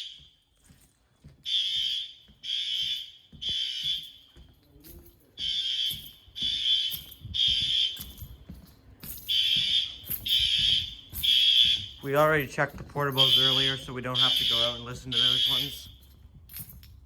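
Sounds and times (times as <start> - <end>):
fire alarm horn blasts: 0.0 - 0.5, 1.4 - 4.5, 5.4 - 8.2, 9.3 - 16.0.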